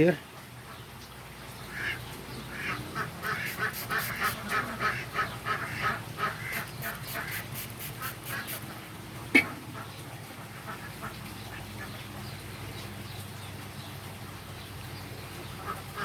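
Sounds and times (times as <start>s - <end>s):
rapid repeated animal calls: 2.6s - 8.7s.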